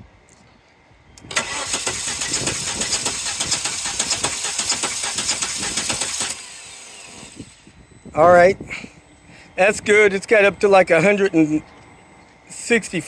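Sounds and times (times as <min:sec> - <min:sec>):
engine cranking by starter motor: 0:01.2 - 0:07.8.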